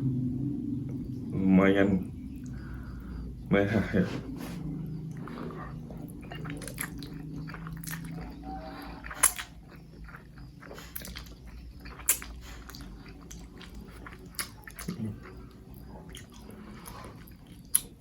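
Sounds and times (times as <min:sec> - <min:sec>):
low hum: 0:00.0 - 0:17.7
person chewing noodles: 0:04.2 - 0:18.0.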